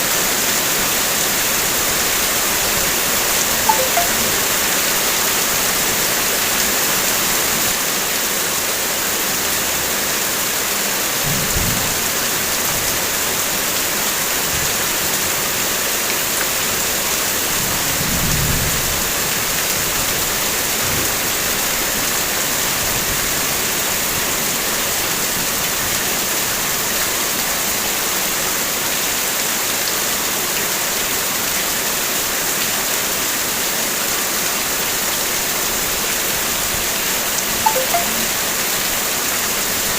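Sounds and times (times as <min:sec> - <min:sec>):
heavy rain on a car: 0:06.1 - 0:37.1.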